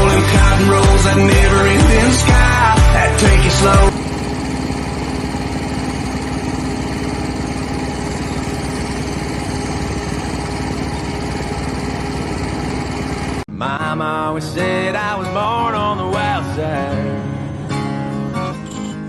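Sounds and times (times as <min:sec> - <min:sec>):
engine idling: 0:03.7 - 0:13.5.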